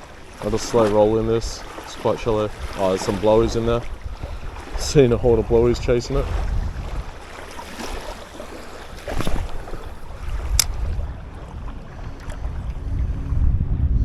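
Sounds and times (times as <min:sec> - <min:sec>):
wind buffeting microphone: 0:00.0 - 0:14.0
short sharp clicks: 0:10.6 - 0:10.8.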